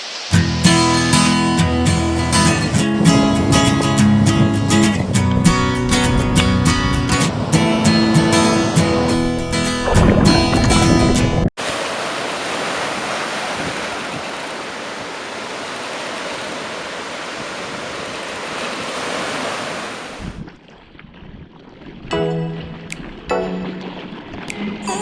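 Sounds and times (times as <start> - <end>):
breaking waves: 0.0 - 20.8
music: 0.3 - 11.5, 22.1 - 25.0
wind on microphone: 0.3 - 11.5, 20.0 - 25.0.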